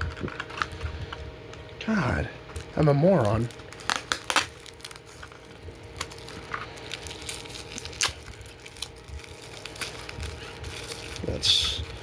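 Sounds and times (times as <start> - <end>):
packaging crinkling: 2.5 - 12.0.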